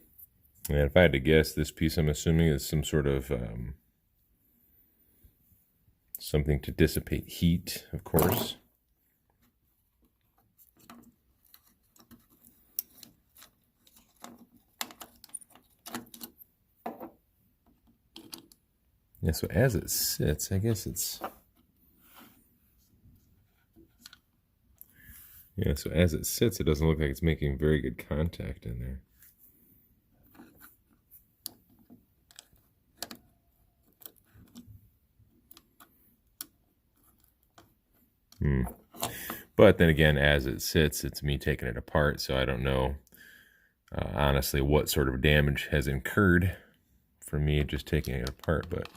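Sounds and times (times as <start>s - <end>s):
small parts clicking and tapping: 10.0s - 18.7s, 23.8s - 24.9s, 31.4s - 39.4s, 47.6s - 48.9s.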